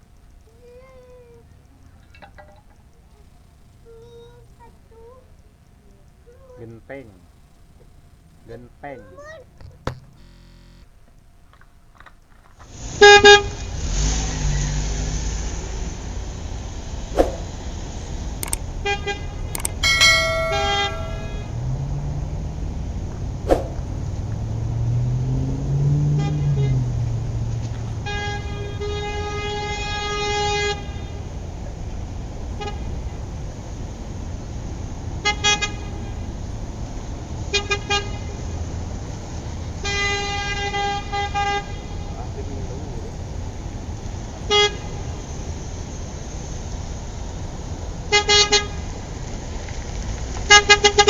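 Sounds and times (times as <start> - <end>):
horn tooting: 0.0 - 11.0, 12.6 - 49.2, 50.4 - 51.0
low hum: 0.0 - 11.5, 12.8 - 36.7.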